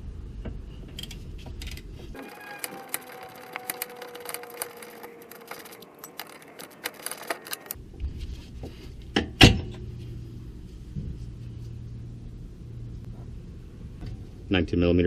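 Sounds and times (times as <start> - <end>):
hand tools clicking: 1.0 - 7.8.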